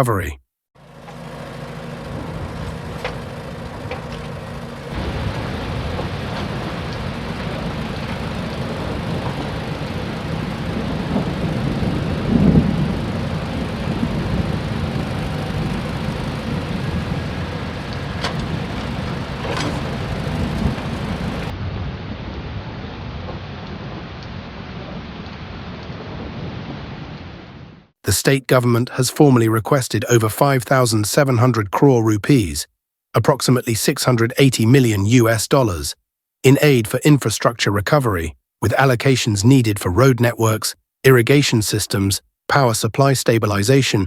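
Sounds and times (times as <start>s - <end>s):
heavy water rushing: 4.9s - 21.6s.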